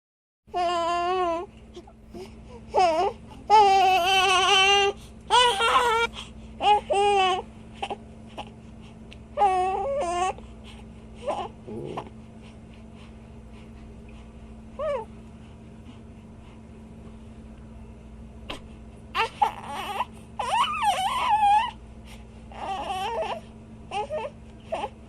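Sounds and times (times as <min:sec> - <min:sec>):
infant crying: 0:00.5 - 0:01.5, 0:02.7 - 0:08.0, 0:09.4 - 0:10.4, 0:19.2 - 0:21.8, 0:22.5 - 0:24.9
steady low hum: 0:00.5 - 0:25.0.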